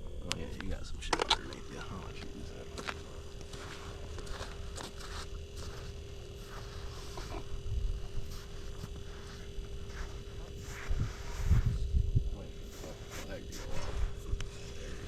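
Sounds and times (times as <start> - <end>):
faint steady hum: 0.0 - 15.0
crunches and scrapes on snowy ice: 2.7 - 11.8
wind rumble on microphone: 7.4 - 15.0.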